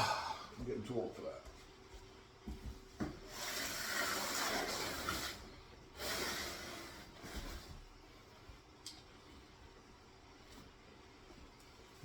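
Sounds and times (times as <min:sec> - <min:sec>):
man breathing heavily: 0:00.0 - 0:00.7.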